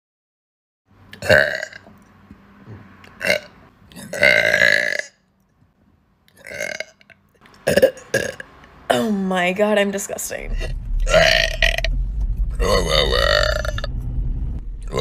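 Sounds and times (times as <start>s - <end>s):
woman burping: 7.6s - 9.2s.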